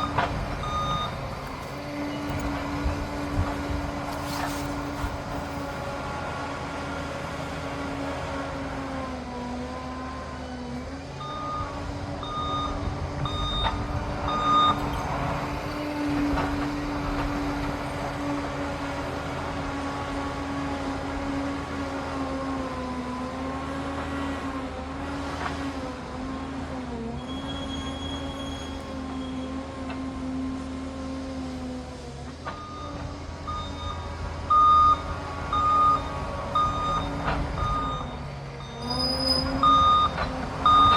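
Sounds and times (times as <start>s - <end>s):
reversing alarm beeps: 0.0s - 1.2s, 11.2s - 15.0s, 32.6s - 40.9s
dozer diesel engine running: 0.0s - 40.9s.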